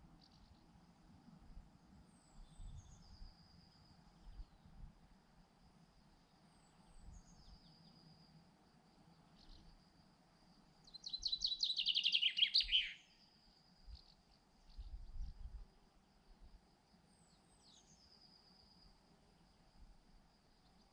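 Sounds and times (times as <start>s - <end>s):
high insect trill: 0.1s - 20.9s
faint thin bird chirps: 2.2s - 4.7s, 9.2s - 9.8s, 10.8s - 15.5s
songbird singing descending phrase: 10.9s - 13.2s.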